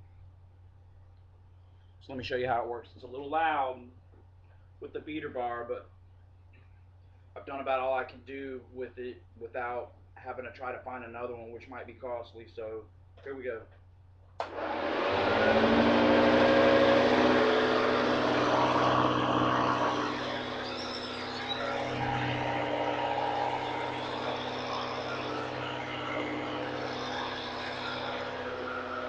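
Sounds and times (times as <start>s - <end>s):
vacuum cleaner motor whine: 14.4s - 29.0s.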